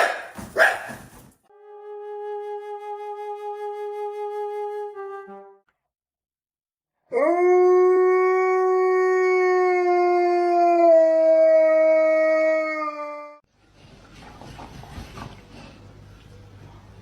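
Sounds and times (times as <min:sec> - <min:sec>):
dog howling: 0:07.1 - 0:13.4.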